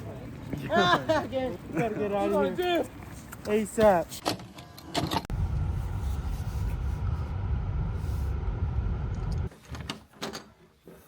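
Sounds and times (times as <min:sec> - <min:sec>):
car road rumble: 0:05.3 - 0:09.5.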